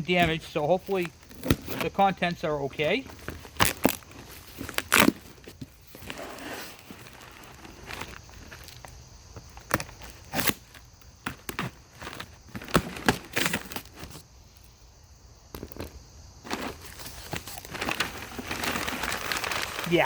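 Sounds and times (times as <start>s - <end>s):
cardboard box ripping open: 3.2s - 8.2s, 10.2s - 10.7s, 16.5s - 20.0s.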